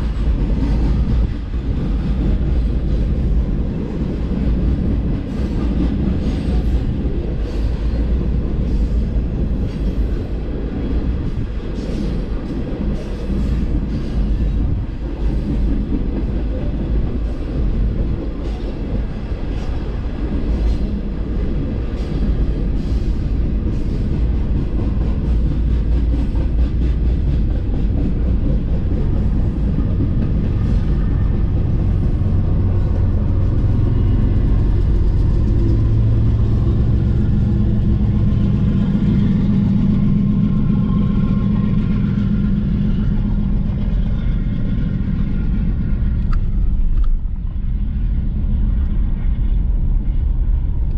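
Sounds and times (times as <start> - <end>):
freight train rumbling past: 0.0 - 50.9
low diesel locomotive drone: 0.0 - 50.9.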